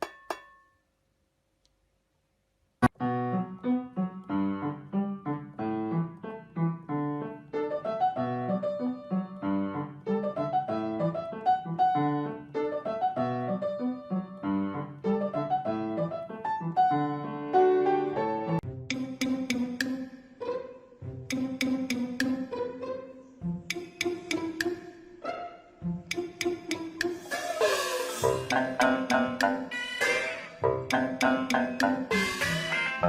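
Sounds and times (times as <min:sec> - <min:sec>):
click: 0:01.6 - 0:01.8, 0:18.9 - 0:20.0, 0:21.3 - 0:22.5, 0:23.6 - 0:24.8, 0:26.1 - 0:27.2
piano music: 0:02.8 - 0:19.8, 0:20.5 - 0:33.0.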